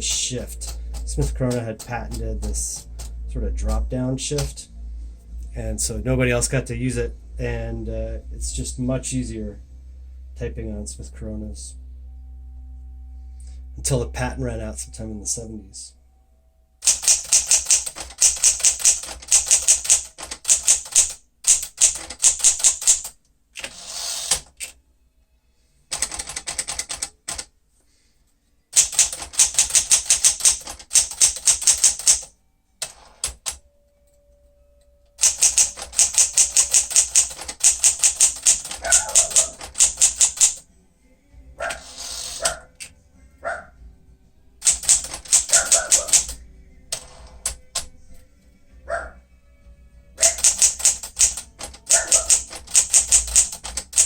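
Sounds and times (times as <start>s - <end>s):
manual typewriter key strikes: 0.0s - 3.8s, 4.4s - 4.6s, 16.8s - 24.8s, 25.9s - 27.5s, 28.8s - 33.6s, 35.2s - 40.6s, 44.6s - 48.0s, 50.2s - 54.0s.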